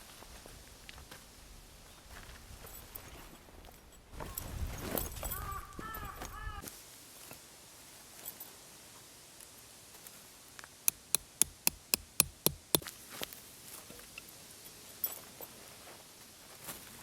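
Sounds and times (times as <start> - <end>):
quick sharp knocks: 10.9 - 12.9.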